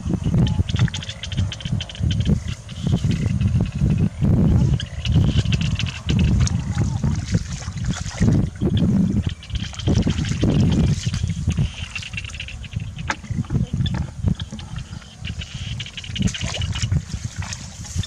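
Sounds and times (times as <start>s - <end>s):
water sloshing and trickling: 5.4s - 18.0s
small knocks and splashes: 6.4s - 8.5s, 9.3s - 11.7s, 16.2s - 18.0s.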